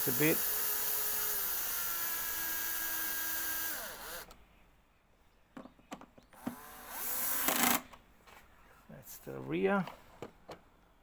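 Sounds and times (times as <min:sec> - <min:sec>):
cordless drill driving screw: 0:00.0 - 0:04.4, 0:06.4 - 0:07.9.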